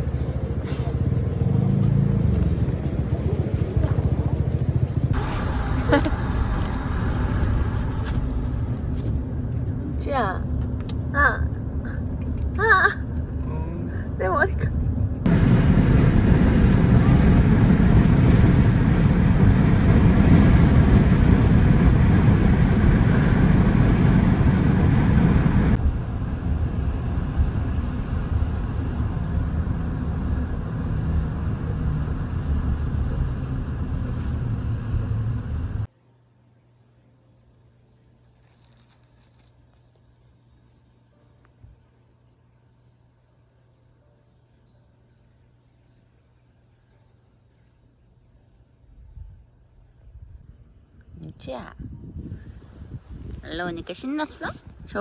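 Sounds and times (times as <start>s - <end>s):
car road and engine noise: 0.0s - 35.9s
crickets chirring: 35.9s - 55.0s.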